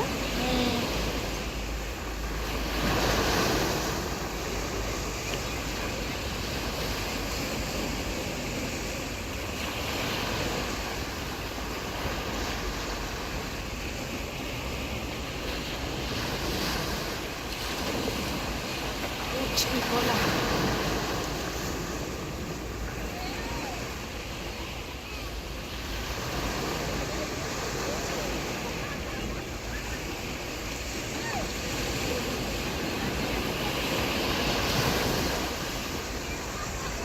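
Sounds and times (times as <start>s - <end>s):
sea waves breaking on beach: 0.0s - 37.0s.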